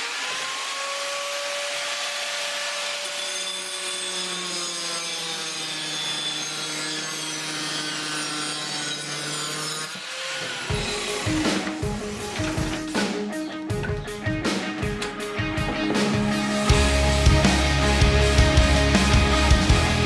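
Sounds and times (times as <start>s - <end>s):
power tool cutting steel: 0.0s - 13.0s.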